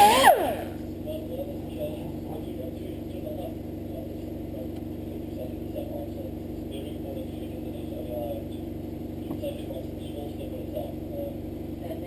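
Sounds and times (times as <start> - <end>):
air compressor humming: 0.0 - 1.0.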